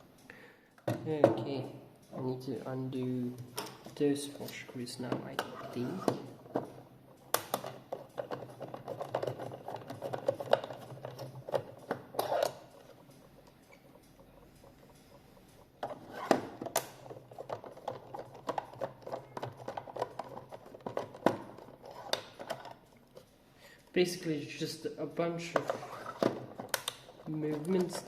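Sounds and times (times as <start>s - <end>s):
plastic case parts handled: 15.8s - 23.3s
screwdriver clicks and taps: 26.7s - 27.0s.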